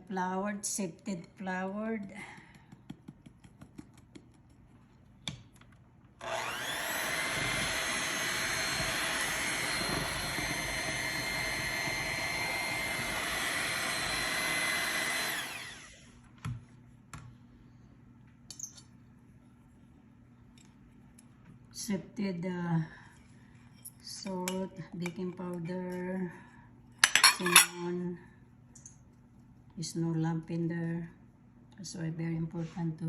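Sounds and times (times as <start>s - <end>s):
kitchen appliance motor whine: 6.2s - 16.2s.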